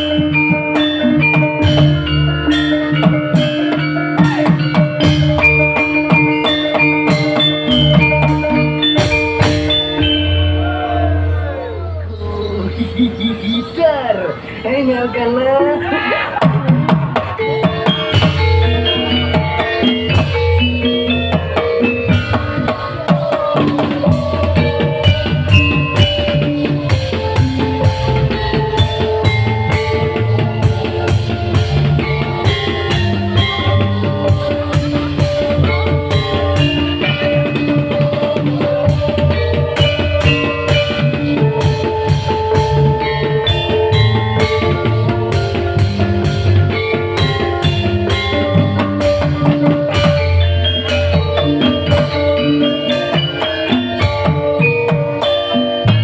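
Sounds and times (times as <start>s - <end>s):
live band music: 0.0s - 56.0s
drum kit beat: 15.8s - 56.0s.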